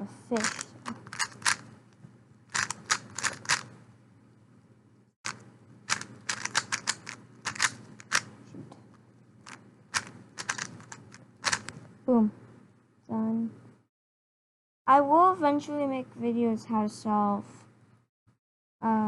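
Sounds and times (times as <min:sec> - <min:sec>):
puzzle cube plastic clicking: 0:00.4 - 0:01.6, 0:02.5 - 0:03.7, 0:05.3 - 0:08.3, 0:09.5 - 0:11.8.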